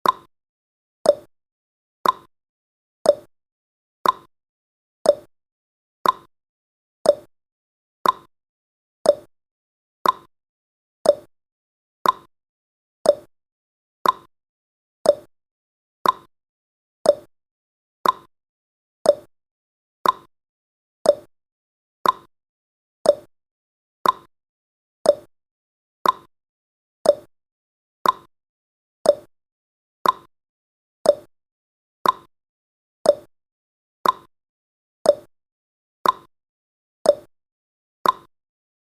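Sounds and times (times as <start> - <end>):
timer ticking: 0.0 - 0.3, 1.1 - 1.3, 2.0 - 2.3, 3.1 - 3.3, 4.0 - 4.3, 5.1 - 5.3, 6.0 - 6.3, 7.0 - 7.3, 8.0 - 8.3, 9.0 - 9.3, 10.0 - 10.3, 11.0 - 11.3, 12.0 - 12.3, 13.0 - 13.3, 14.0 - 14.3, 15.0 - 15.3, 16.0 - 16.3, 17.0 - 17.3, 18.0 - 18.3, 19.0 - 19.3, 20.0 - 20.3, 21.0 - 21.3, 22.0 - 22.3, 23.0 - 23.3, 24.0 - 24.3, 25.0 - 25.3, 26.0 - 26.3, 27.0 - 27.3, 28.0 - 28.3, 29.0 - 29.3, 30.0 - 30.3, 31.0 - 31.3, 32.0 - 32.3, 33.0 - 33.3, 34.0 - 34.3, 35.1 - 35.3, 36.0 - 36.3, 37.1 - 37.3, 38.0 - 38.3.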